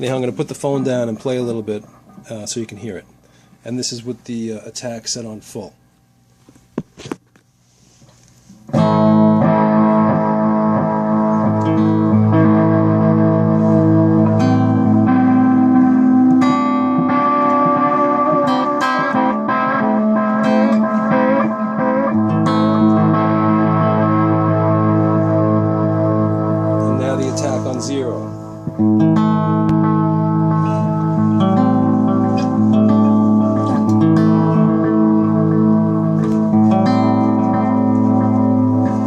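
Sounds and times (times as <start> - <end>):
electric guitar with delay: 8.7 - 39.0.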